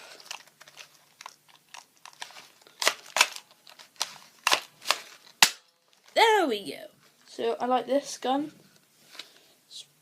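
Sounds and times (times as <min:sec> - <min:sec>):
sharp plastic snaps: 0:00.3 - 0:05.8.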